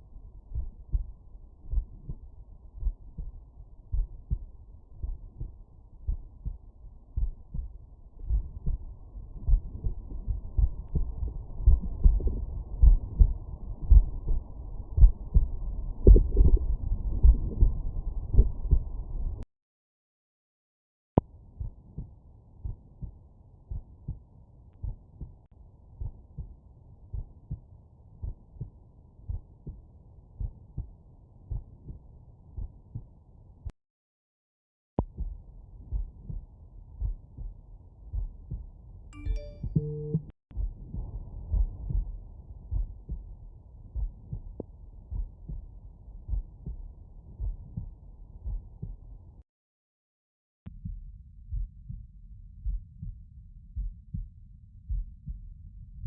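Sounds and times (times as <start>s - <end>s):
heartbeat through stethoscope: 0.0s - 19.4s, 21.6s - 33.8s, 35.0s - 49.4s, 50.7s - 56.0s
low steady rumble: 0.0s - 19.4s, 35.2s - 49.4s, 50.7s - 56.0s.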